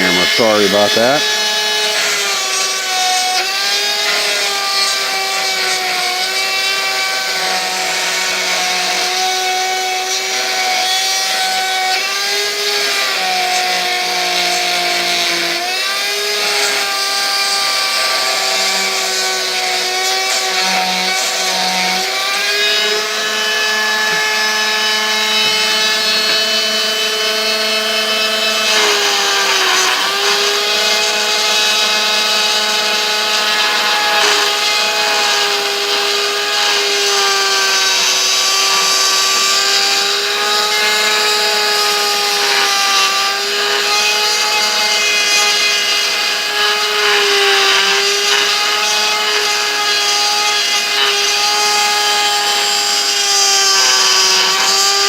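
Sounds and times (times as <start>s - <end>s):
high-speed power tool cutting: 0.0s - 55.0s.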